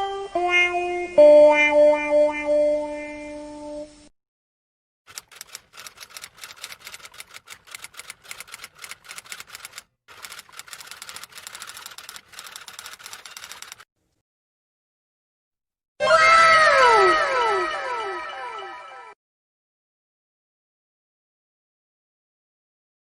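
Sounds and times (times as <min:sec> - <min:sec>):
keyboard typing clicks: 0:05.1 - 0:13.8.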